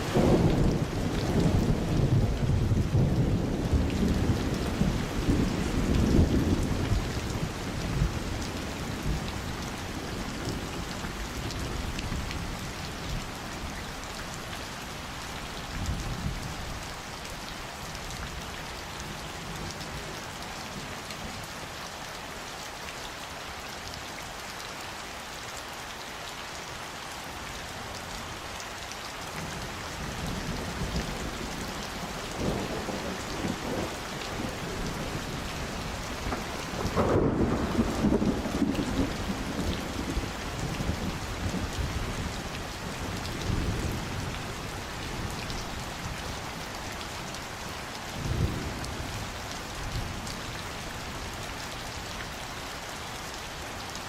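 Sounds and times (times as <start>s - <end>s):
thunder rumbling: 0.0s - 8.3s, 30.0s - 46.2s
steady rain falling: 0.0s - 54.0s.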